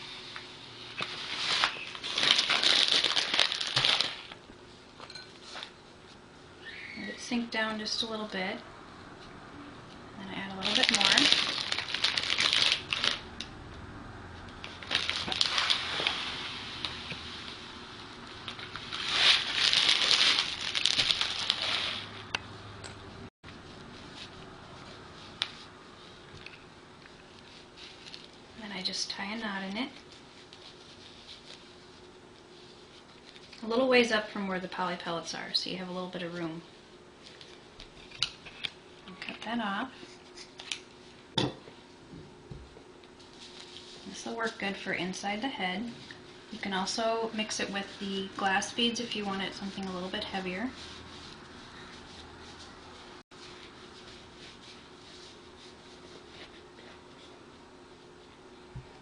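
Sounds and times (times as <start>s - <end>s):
plastic pellets pattering: 1.7s - 4.4s, 10.6s - 13.2s, 18.7s - 22.0s.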